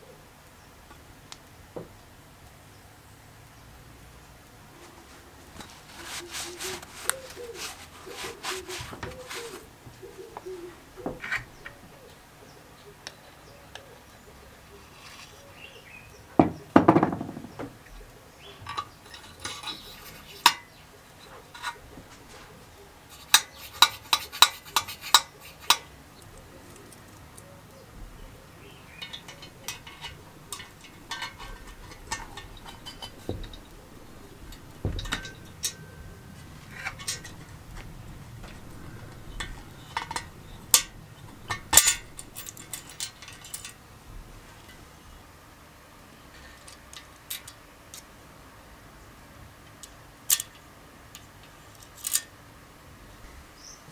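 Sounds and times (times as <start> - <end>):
metal tools clinking and knocking: 5.6 - 9.7, 11.0 - 11.8, 18.6 - 22.5, 23.1 - 44.9, 51.8 - 52.3.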